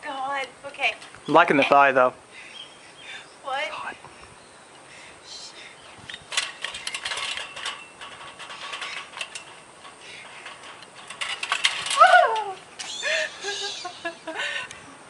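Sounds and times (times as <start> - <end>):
rapid clicking and rattling: 6.3 - 12.1.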